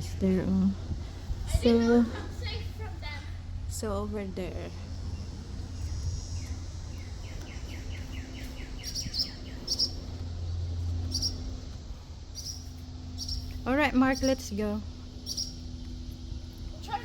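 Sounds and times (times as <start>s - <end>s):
steady low rumble: 0.0s - 17.0s
songbird calling: 4.8s - 17.0s.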